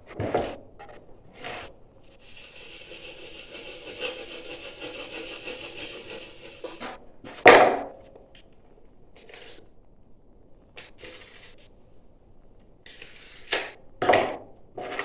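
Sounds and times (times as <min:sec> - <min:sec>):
hand saw strokes: 0:01.4 - 0:07.0.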